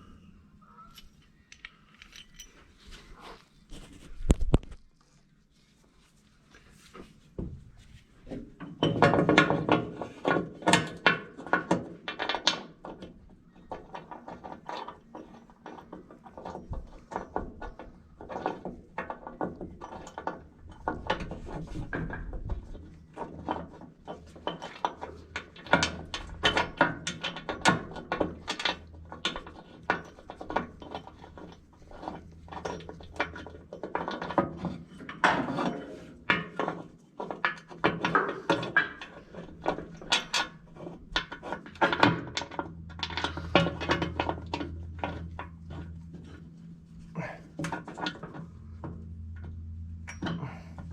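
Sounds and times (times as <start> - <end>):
low steady hum: 0.0 - 9.5, 15.2 - 50.9.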